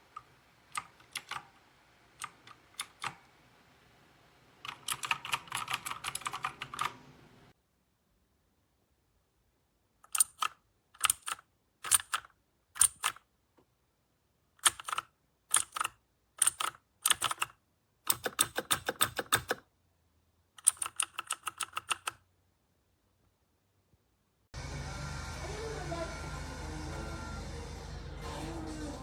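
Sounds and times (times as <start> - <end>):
clicky mechanical keyboard typing: 0.2 - 1.5, 2.2 - 3.2, 4.6 - 7.0, 10.1 - 13.2, 14.6 - 19.6, 20.6 - 22.2.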